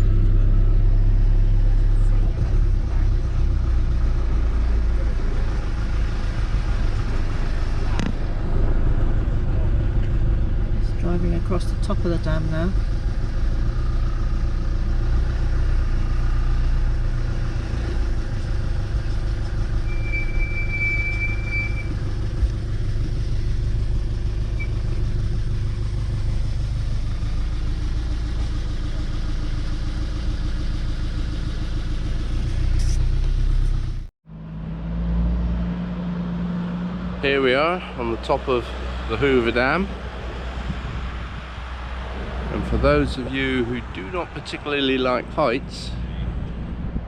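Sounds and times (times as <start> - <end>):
truck driving: 0.0 - 47.0
thin whistle: 19.8 - 21.9.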